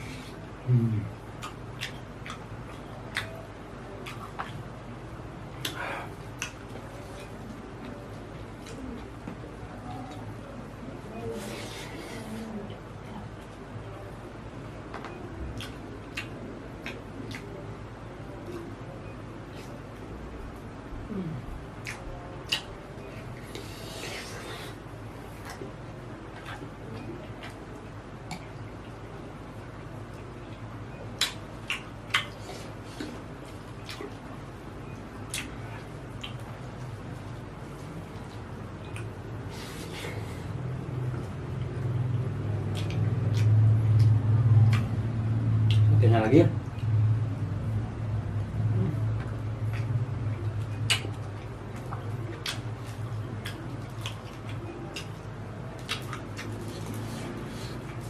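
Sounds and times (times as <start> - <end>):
chewing with wet mouth clicks: 1.3 - 4.7, 5.5 - 10.3, 14.9 - 17.7, 21.5 - 24.6, 25.3 - 45.9, 49.0 - 58.0.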